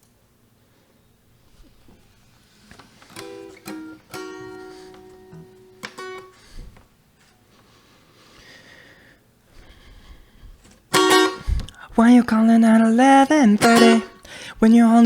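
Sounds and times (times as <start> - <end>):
plucked guitar notes: 3.1 - 6.5, 10.9 - 11.7, 13.3 - 14.3.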